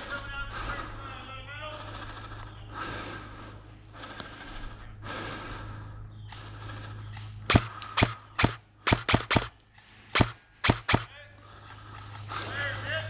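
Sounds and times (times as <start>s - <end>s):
airsoft gun shots: 7.5s - 9.5s, 10.2s - 11.1s.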